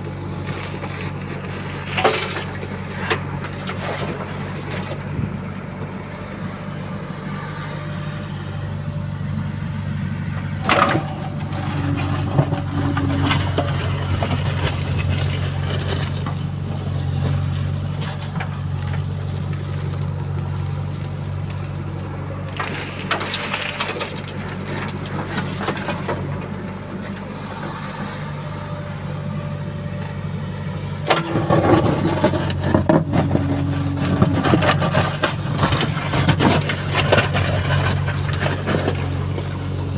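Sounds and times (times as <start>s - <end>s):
clattering knocks of soil loading: 0.0s - 5.4s, 10.4s - 27.3s, 31.0s - 39.7s
diesel engine running: 0.0s - 39.9s.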